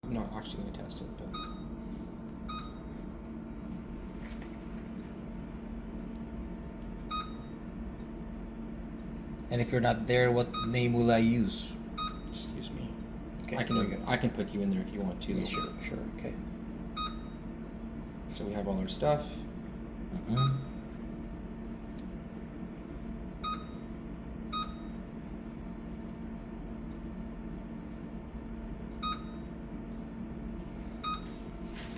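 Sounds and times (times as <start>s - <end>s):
steady low hum: 0.0s - 31.9s
short electronic beeps: 1.3s - 1.6s, 7.1s - 7.5s, 10.5s - 10.8s, 17.0s - 17.4s, 20.4s - 20.8s, 23.4s - 23.8s, 24.5s - 24.9s, 29.0s - 29.4s.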